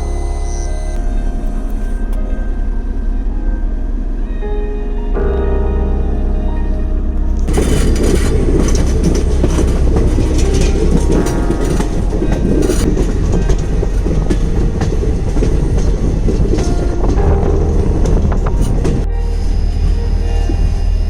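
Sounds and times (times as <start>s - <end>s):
train rumble: 0.0s - 21.0s.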